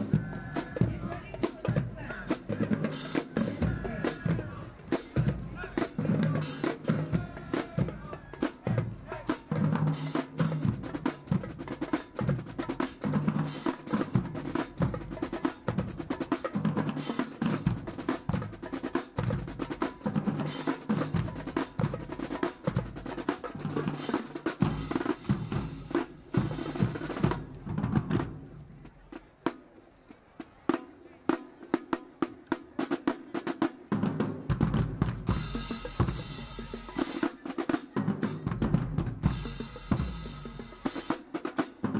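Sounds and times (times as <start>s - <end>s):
drumline playing snare and bass drums: 0.0s - 41.9s.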